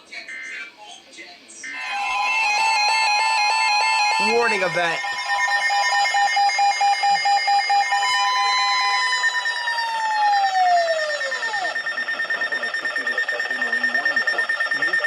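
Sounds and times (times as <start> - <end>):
steady higher tones: 1.8 - 7.6.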